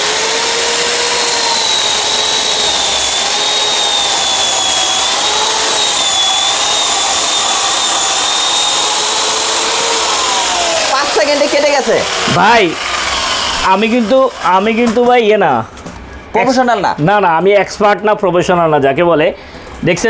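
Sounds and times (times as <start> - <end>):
chainsaw cutting log: 0.0 - 15.0.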